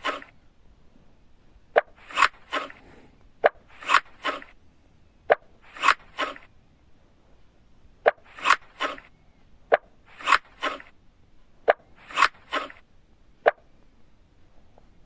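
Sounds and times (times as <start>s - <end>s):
cartoon swishing sounds: 0.0s - 0.3s, 1.8s - 4.6s, 5.7s - 6.5s, 8.1s - 9.1s, 9.7s - 10.9s, 11.7s - 12.8s.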